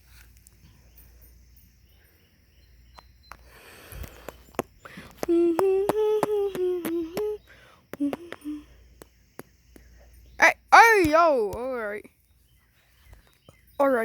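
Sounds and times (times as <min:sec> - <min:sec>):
wavering hum-like tone: 0:05.2 - 0:07.4.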